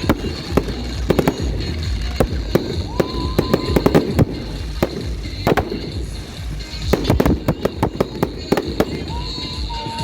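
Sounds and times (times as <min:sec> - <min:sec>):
fireworks bangs and pops: 0:00.0 - 0:10.0.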